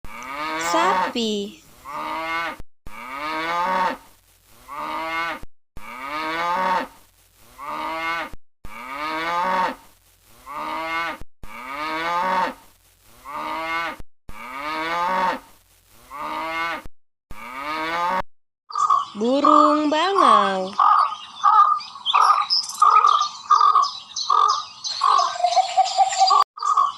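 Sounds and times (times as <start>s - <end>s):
cow mooing: 0.1s - 1.2s, 1.8s - 4.0s, 4.7s - 7.0s, 7.6s - 9.8s, 10.4s - 12.6s, 13.2s - 15.4s, 16.1s - 18.2s.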